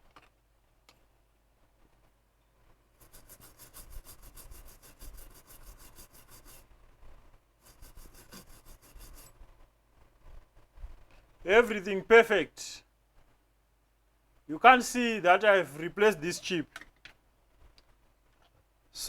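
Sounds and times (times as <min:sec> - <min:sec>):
quick scrubbing on circuit board: 0:03.0 - 0:06.7, 0:07.6 - 0:09.4.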